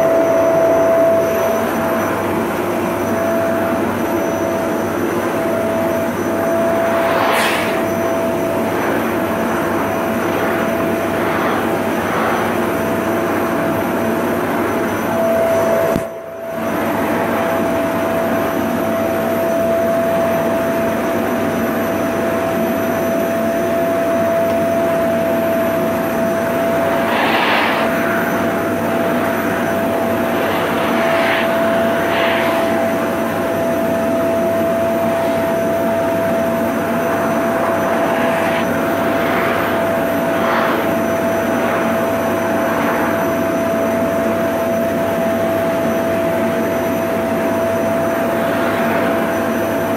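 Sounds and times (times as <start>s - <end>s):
vacuum cleaner running: 0.0s - 49.9s
short hissing swishes: 6.6s - 9.0s, 26.0s - 34.2s, 35.0s - 43.7s.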